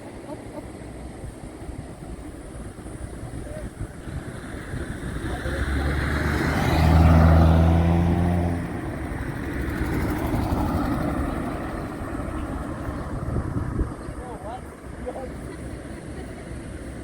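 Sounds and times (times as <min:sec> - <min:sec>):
road and wind noise: 0:00.0 - 0:17.0
vehicle engine passing by: 0:04.0 - 0:17.0.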